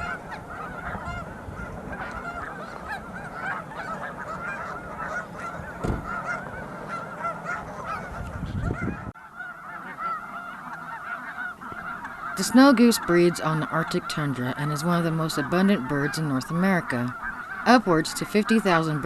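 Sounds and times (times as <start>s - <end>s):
geese honking: 0.0s - 19.0s
low thump: 5.8s - 6.2s.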